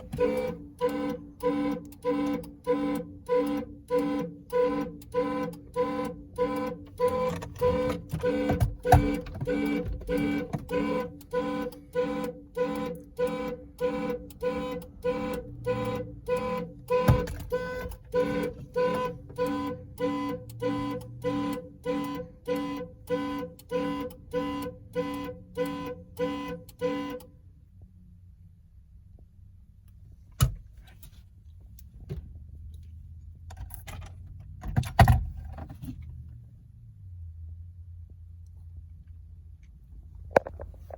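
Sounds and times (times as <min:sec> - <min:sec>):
car horn honking: 0:00.0 - 0:27.4
car doors clunking: 0:07.0 - 0:11.2, 0:16.5 - 0:19.4.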